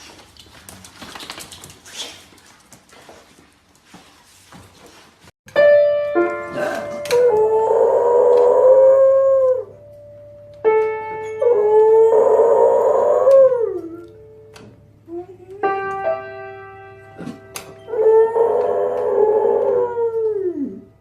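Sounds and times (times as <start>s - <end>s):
piano chords: 5.5s - 12.2s, 13.3s - 21.0s
dog howling: 6.6s - 9.7s, 11.4s - 14.1s, 17.9s - 20.9s.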